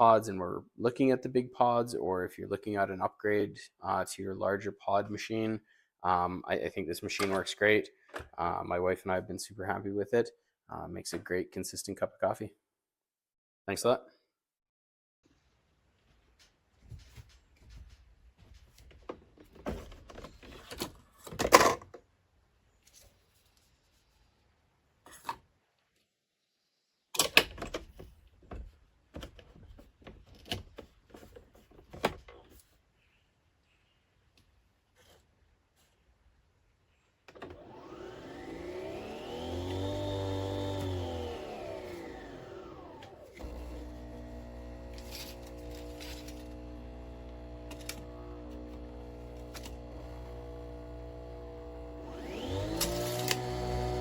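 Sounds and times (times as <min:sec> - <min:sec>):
coffee machine humming: 0:37.5 - 0:54.0.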